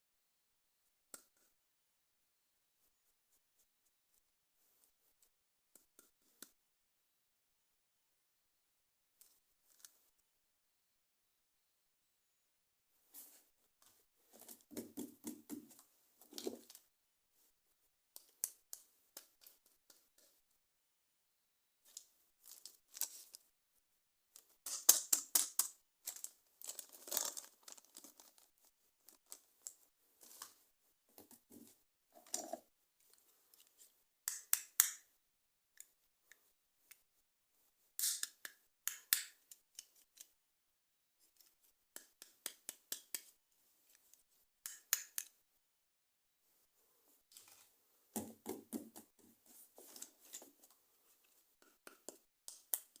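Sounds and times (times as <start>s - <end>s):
packaging crinkling and tearing: 26.1s - 28.5s.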